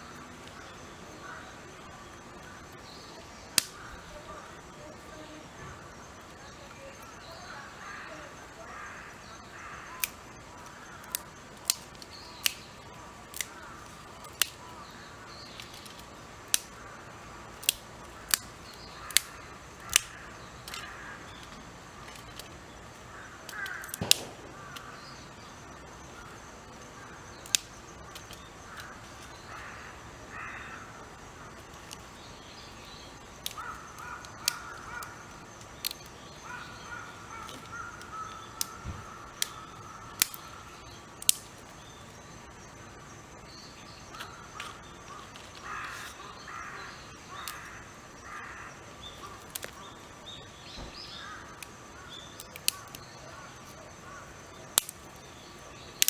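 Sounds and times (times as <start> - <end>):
crows cawing: 0.0 - 2.6, 7.3 - 11.3, 18.1 - 25.6, 28.3 - 32.1, 32.7 - 40.9, 44.1 - 49.9, 50.9 - 54.9
sharp snaps or clicks: 3.5 - 4.0, 13.3 - 14.6, 17.6 - 22.6, 23.5 - 25.1, 27.4 - 29.4, 39.4 - 40.6, 41.2 - 41.7, 49.4 - 49.8, 54.7 - 55.2.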